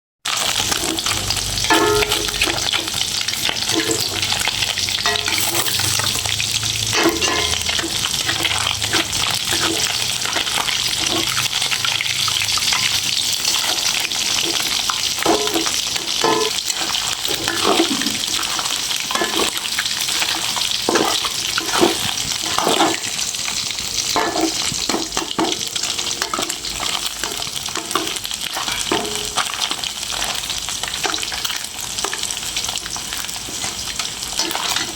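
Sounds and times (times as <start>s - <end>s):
fish sizzling in hot oil: 0.2s - 34.9s
utensil scraping and knocking pan: 0.7s - 11.5s, 12.7s - 23.2s.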